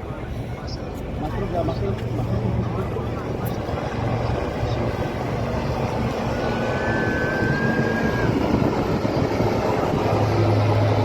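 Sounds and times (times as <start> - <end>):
aircraft engine rushing: 0.0 - 11.0.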